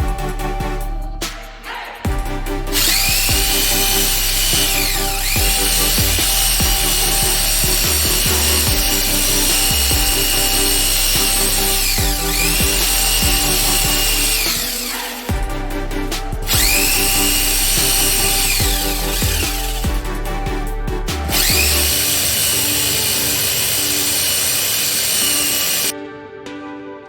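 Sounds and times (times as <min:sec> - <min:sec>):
background music with beat: 0:00.0 - 0:27.0
power tool motor whining: 0:02.8 - 0:15.4, 0:16.4 - 0:20.0, 0:21.3 - 0:25.9.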